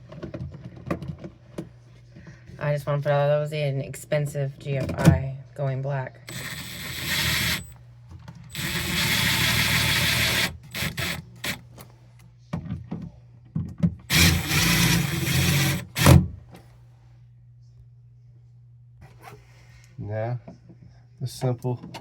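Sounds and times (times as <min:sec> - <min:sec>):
power drill driving screws: 0:06.3 - 0:07.7, 0:08.5 - 0:11.6, 0:14.1 - 0:16.3.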